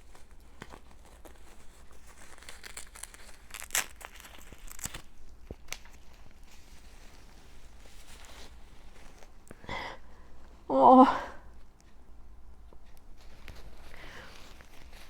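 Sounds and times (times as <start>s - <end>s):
packaging crinkling and tearing: 0.0s - 9.3s.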